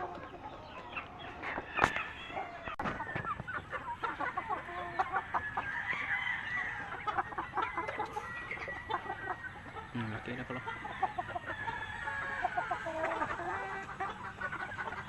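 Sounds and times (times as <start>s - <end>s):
chickens clucking and chirping: 0.0s - 15.0s
rooster crowing: 1.5s - 2.8s, 5.3s - 7.1s, 10.5s - 13.3s.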